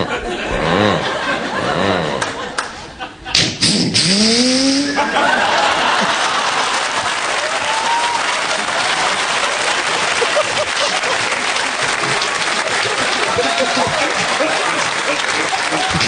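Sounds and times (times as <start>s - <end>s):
audience applauding: 5.1s - 16.0s.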